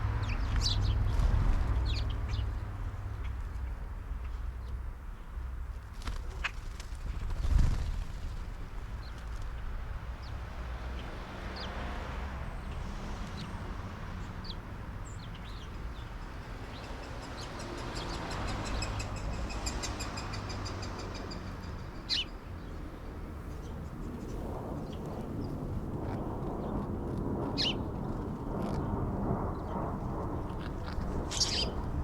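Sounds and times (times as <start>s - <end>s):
songbirds chirping: 0.0s - 6.6s, 8.9s - 25.7s, 30.4s - 32.0s
low background rumble: 22.4s - 32.0s.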